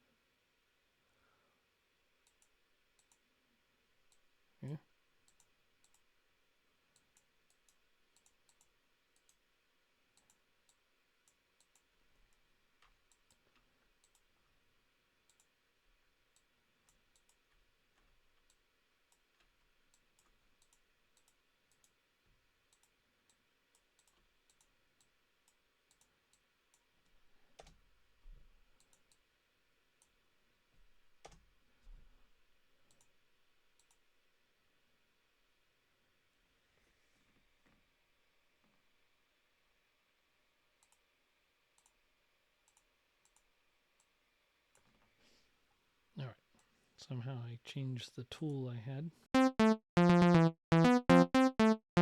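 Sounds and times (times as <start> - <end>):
computer mouse clicks: 2.2 - 3.2, 5.3 - 6.0, 6.9 - 9.4, 10.1 - 14.3, 15.3 - 15.5, 16.3 - 17.5, 18.4 - 22.0, 22.7 - 26.9, 28.8 - 29.2, 33.8 - 34.0, 40.8 - 41.0, 41.8 - 42.0.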